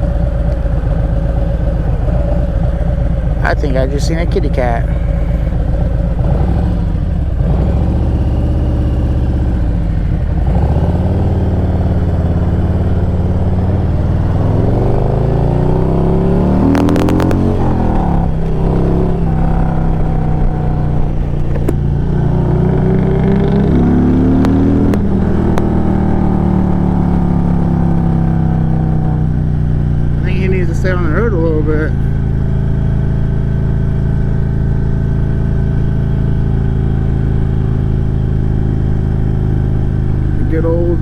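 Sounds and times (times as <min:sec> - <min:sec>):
motorcycle engine running: 0:00.0 - 0:41.0.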